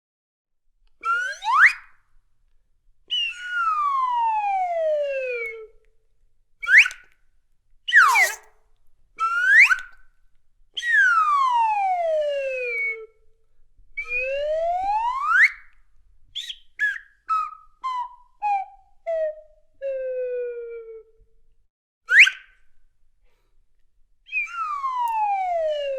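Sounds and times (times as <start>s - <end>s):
slide whistle: 1.0s - 1.9s, 6.6s - 7.0s, 7.9s - 8.5s, 9.2s - 10.0s, 10.8s - 13.1s, 14.0s - 15.7s, 16.4s - 21.0s, 22.1s - 22.6s, 24.3s - 25.9s.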